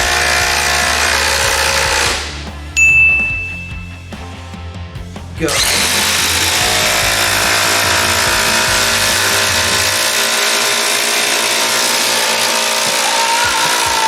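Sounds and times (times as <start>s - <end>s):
impact drivers hammering: 5.5s - 14.0s.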